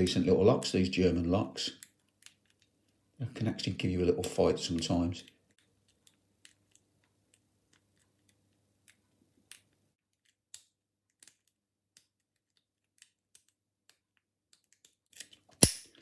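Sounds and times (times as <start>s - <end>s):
lock pick metallic clicks: 14.5s - 16.0s.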